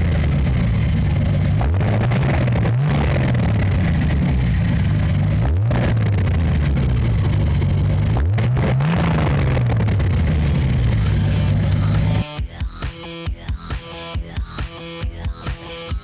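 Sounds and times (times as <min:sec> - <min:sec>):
car engine revving: 0:00.0 - 0:16.0
music with a beat: 0:10.1 - 0:16.0.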